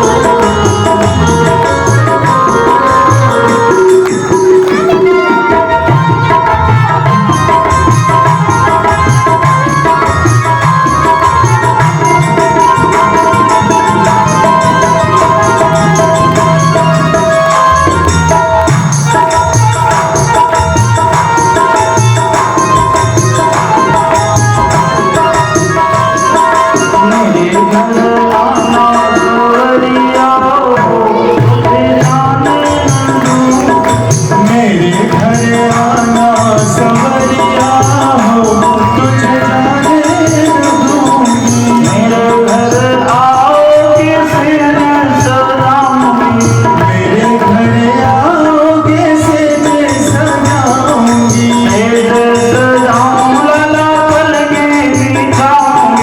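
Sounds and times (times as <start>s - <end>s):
person singing gliding melody: 0.0s - 18.5s
hand drum rhythm: 0.0s - 56.0s
held instrumental tone: 0.0s - 56.0s.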